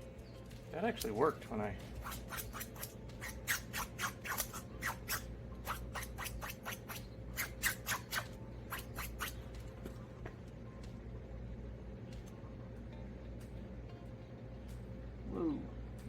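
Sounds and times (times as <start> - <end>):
steady low hum: 0.0 - 16.0
blade cutting strokes: 2.0 - 9.4.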